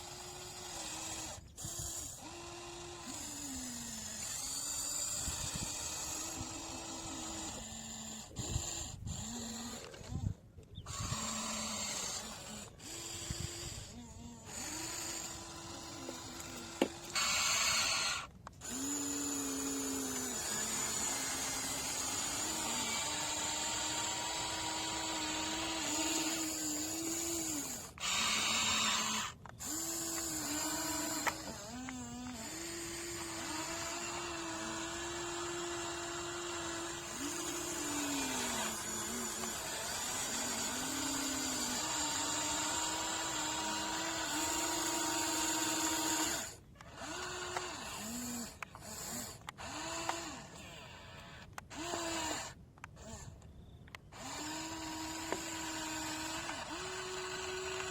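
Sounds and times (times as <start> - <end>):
small electric motors whining: 0.0 - 57.9.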